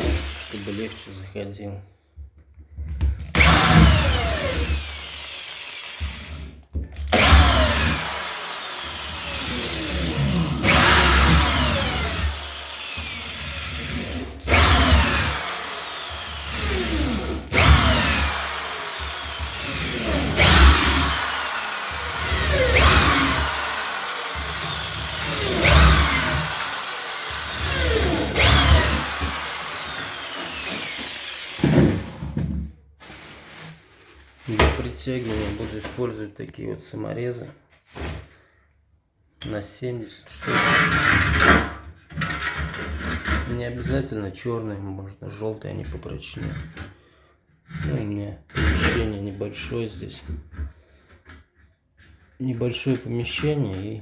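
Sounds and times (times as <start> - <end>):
electric drill boring into wood: 0.0 - 1.1, 3.3 - 32.2.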